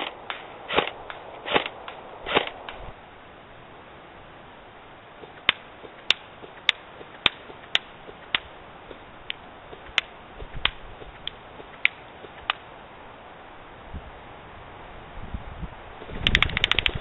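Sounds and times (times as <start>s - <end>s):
airsoft gun firing: 0.0s - 2.6s.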